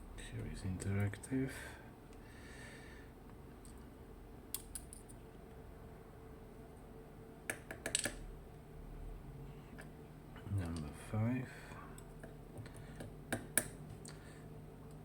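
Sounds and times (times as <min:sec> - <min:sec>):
small metal parts clicking: 0:04.5 - 0:05.2.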